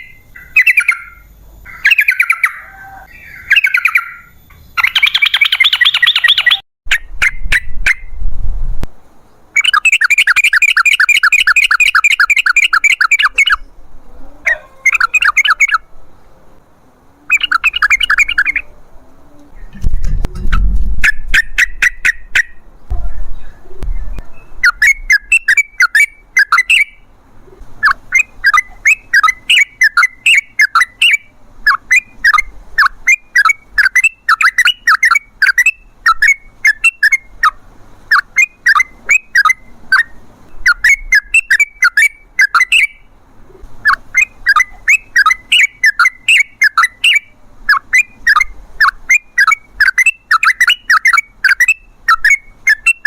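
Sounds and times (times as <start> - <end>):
bulbul singing: 0.0 - 8.2, 9.2 - 19.8, 20.4 - 53.0.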